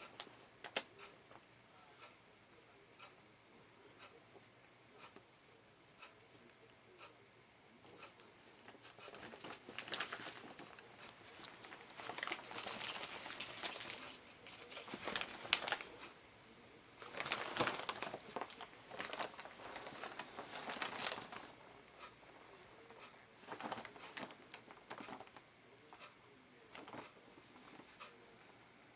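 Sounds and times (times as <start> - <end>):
cat playing with ball toy: 9.1 - 16.0.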